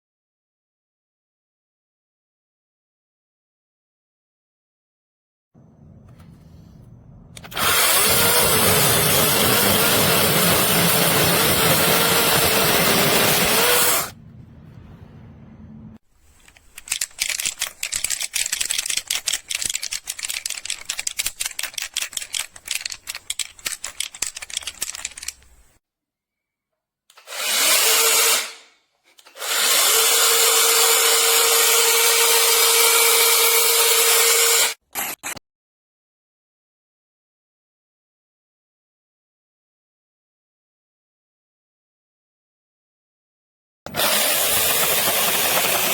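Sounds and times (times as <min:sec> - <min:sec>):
cordless chainsaw running: 0:07.4 - 0:14.1, 0:43.9 - 0:45.9.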